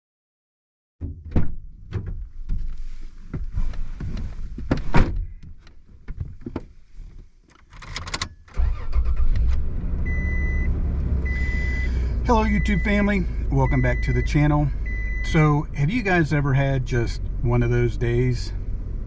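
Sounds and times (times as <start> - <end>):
clunks and knocks inside vehicle: 1.0 - 8.2.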